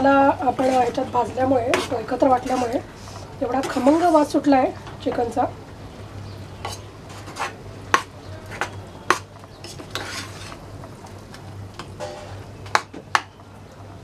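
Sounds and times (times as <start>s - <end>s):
spoon scraping pan: 0.0s - 4.4s, 6.6s - 11.1s.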